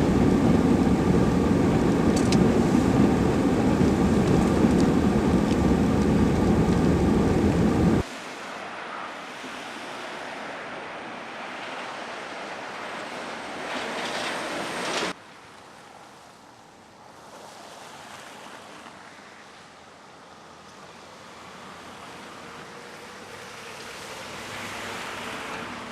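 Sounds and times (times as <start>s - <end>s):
wind rushing: 0.0s - 8.1s
traffic on wet roads: 0.0s - 25.9s.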